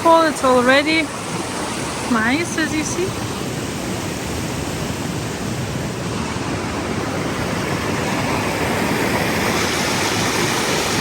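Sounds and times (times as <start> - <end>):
rushing water: 0.0 - 11.0.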